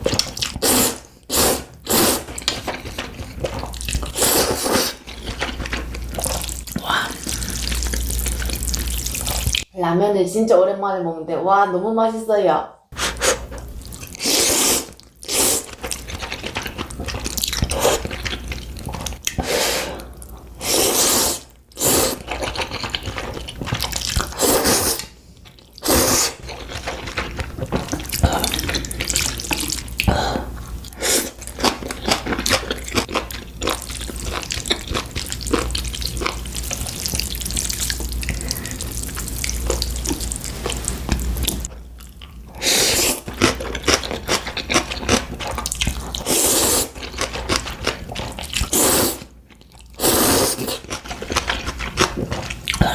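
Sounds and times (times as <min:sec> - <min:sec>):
noodle slurping: 0:00.0 - 0:09.6, 0:13.0 - 0:30.1, 0:42.5 - 0:49.4, 0:50.0 - 0:52.9
wet chewing clicks: 0:21.7 - 0:52.9.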